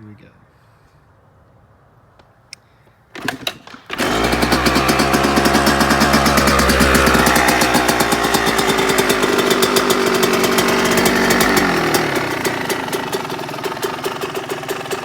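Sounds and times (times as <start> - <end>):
two-stroke engine idling: 3.2 - 15.0.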